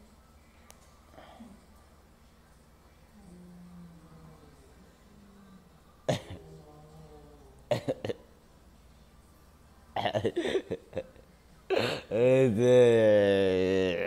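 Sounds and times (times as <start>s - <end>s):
person coughing: 6.1s - 6.4s, 7.7s - 8.3s, 11.7s - 12.2s.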